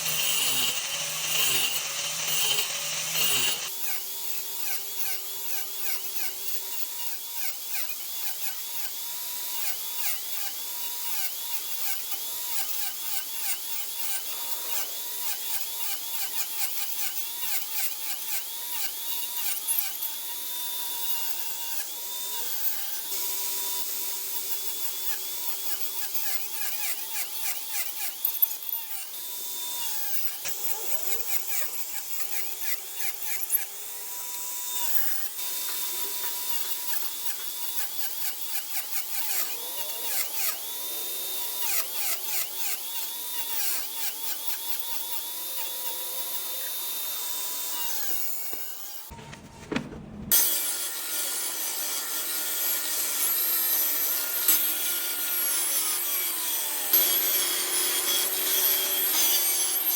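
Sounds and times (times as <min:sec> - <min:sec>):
power tool motor whining: 0:00.0 - 0:23.8
sharp knocks: 0:49.1 - 0:50.4.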